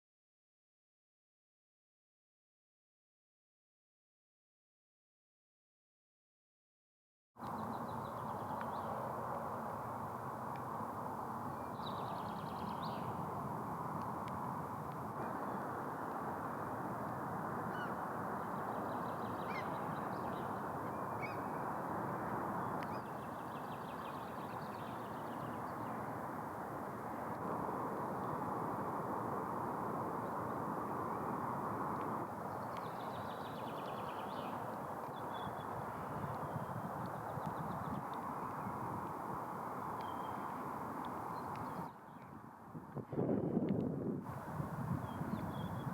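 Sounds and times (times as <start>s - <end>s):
songbird singing: 7.4s - 9.1s, 10.2s - 16.3s, 17.2s - 27.3s, 28.0s - 42.4s, 44.9s - 45.9s
rushing wind: 7.5s - 45.9s.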